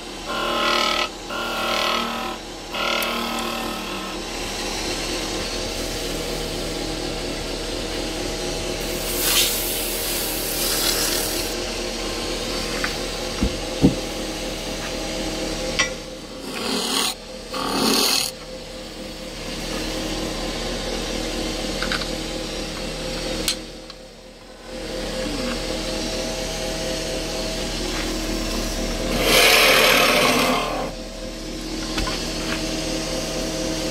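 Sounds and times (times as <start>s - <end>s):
wood lathe motor hum: 0.0s - 7.2s, 16.2s - 18.5s, 24.4s - 33.9s
tool cutting spinning wood: 0.1s - 4.8s, 16.2s - 18.4s, 28.5s - 31.0s.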